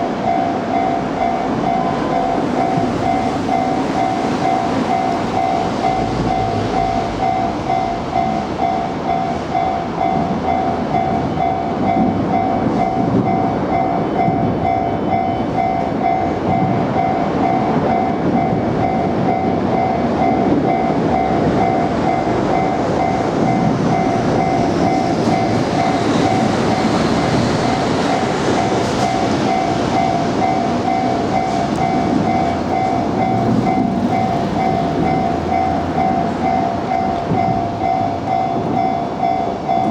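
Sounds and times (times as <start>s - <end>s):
level-crossing warning bell: 0.0s - 39.9s
train wagons rolling on rails: 0.0s - 39.9s.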